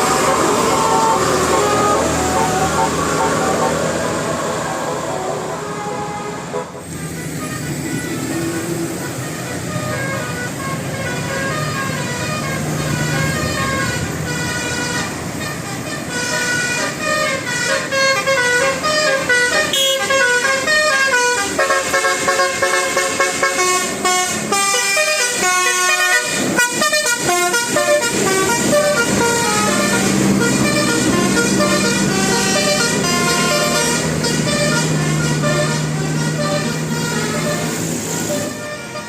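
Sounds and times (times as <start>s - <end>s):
engines running: 0.0s - 16.0s, 26.4s - 38.8s
multi-tone bus horns playing melodies: 0.0s - 39.0s.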